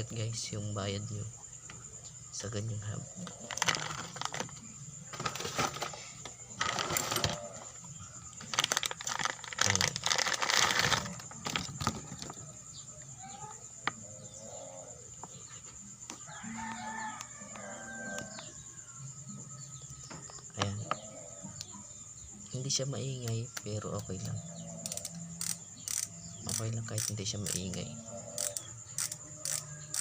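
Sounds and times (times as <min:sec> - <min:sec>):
rooster crowing: 0:16.1 - 0:19.3
bicycle hub clicking: 0:24.8 - 0:27.8, 0:28.4 - 0:30.0.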